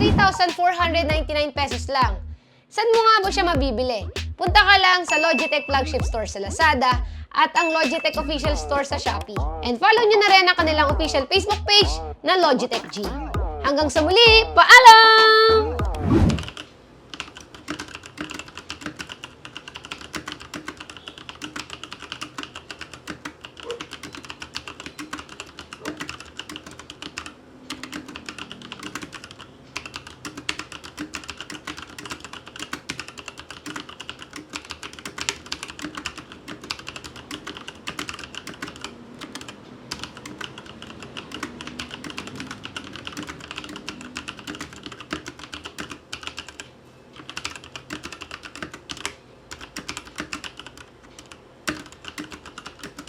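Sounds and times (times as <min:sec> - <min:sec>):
mechanical keyboard typing: 0:16.2 - 0:53.0.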